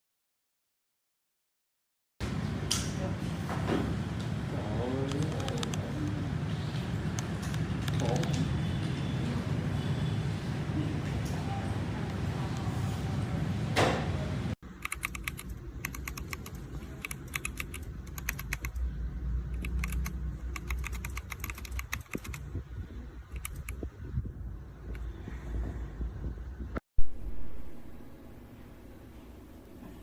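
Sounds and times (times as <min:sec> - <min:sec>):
mechanical keyboard typing: 0:05.0 - 0:06.2, 0:07.2 - 0:08.5, 0:14.7 - 0:18.8, 0:19.5 - 0:22.4, 0:23.3 - 0:23.8.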